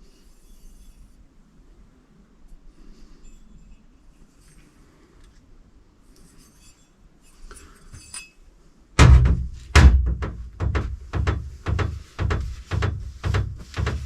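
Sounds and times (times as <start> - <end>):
sharp ringing metal knocks: 9.0 - 14.0.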